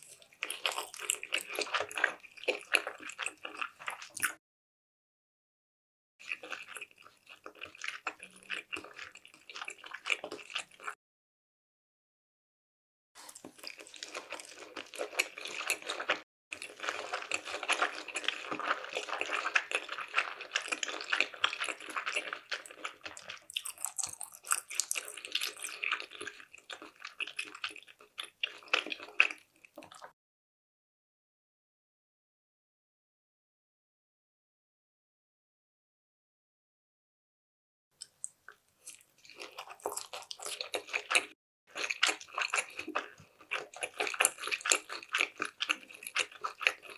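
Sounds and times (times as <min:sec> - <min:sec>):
wet chewing: 0:00.0 - 0:04.4, 0:06.2 - 0:11.0, 0:13.2 - 0:30.1, 0:38.0 - 0:46.9.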